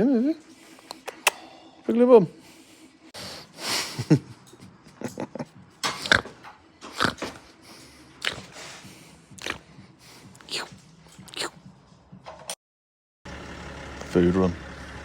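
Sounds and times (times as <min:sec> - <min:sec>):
dog snuffling and snorting: 0:05.8 - 0:11.8.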